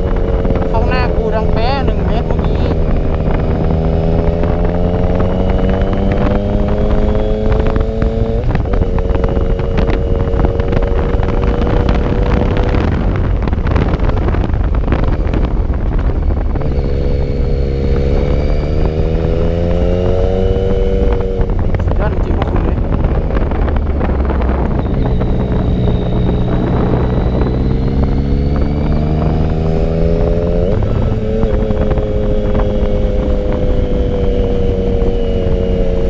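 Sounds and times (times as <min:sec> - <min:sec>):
motorcycle engine running: 0:00.0 - 0:36.0
wind rushing over microphone: 0:00.0 - 0:36.0.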